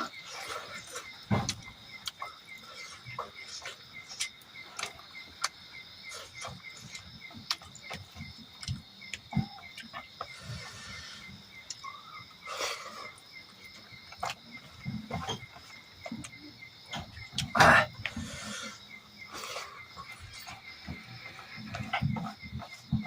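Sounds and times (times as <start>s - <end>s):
insects chirping: 0.0s - 23.0s
close-up chewing and smacking: 0.1s - 23.0s.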